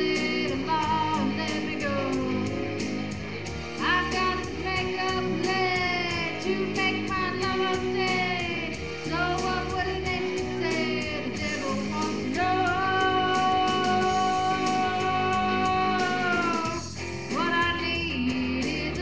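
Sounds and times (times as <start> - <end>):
guitar backing: 0.0 - 19.0
person singing long notes: 3.8 - 17.0.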